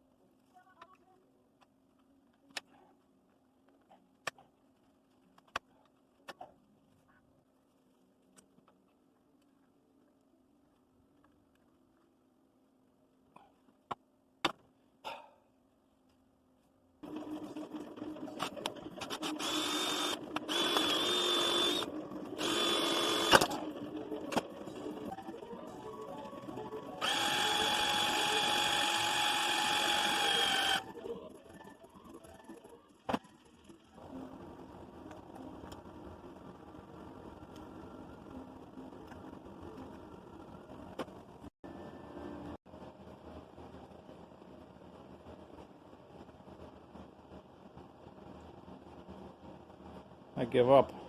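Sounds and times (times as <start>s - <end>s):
power drill whining: 18.4s - 23.6s, 27.0s - 30.9s.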